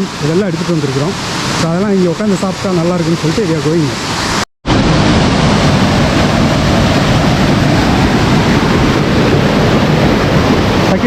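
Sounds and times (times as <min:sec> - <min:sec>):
waterfall roaring: 0:00.0 - 0:11.0.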